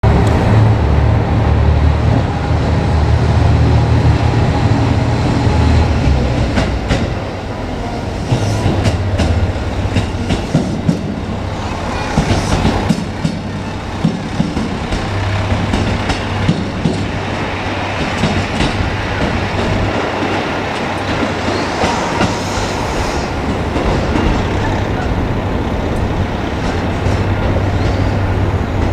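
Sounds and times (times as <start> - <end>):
wheels clicking over rail joints: 8.3 - 28.9
diesel engine humming: 8.9 - 21.5.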